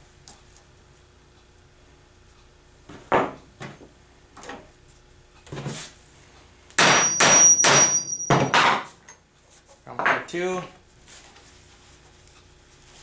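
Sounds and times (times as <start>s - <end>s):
thin high squeal: 7.1s - 8.5s.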